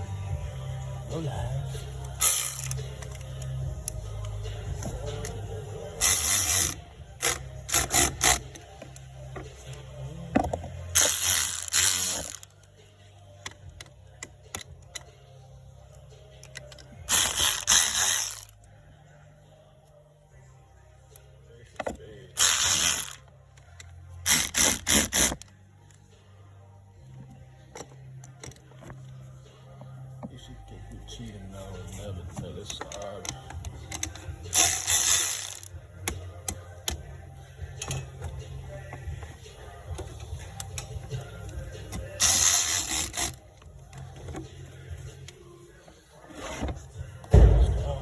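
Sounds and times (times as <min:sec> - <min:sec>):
ratchet wrench clicking: 0:02.0 - 0:04.4, 0:06.0 - 0:09.0, 0:10.9 - 0:12.5, 0:16.4 - 0:18.6, 0:22.4 - 0:25.5, 0:33.2 - 0:37.1, 0:39.9 - 0:44.4.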